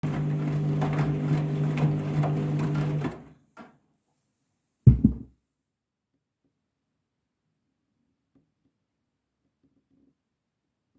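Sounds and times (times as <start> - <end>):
washing machine motor hum: 0.0 - 3.3
loud thump: 4.9 - 5.3.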